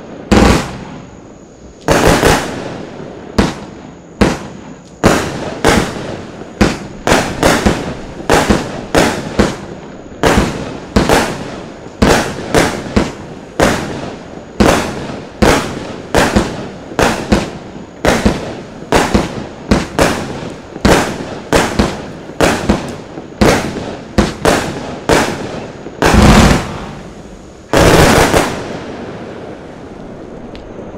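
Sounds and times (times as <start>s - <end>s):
firework cake bangs: 0.0s - 1.0s, 3.3s - 13.9s, 14.6s - 27.1s.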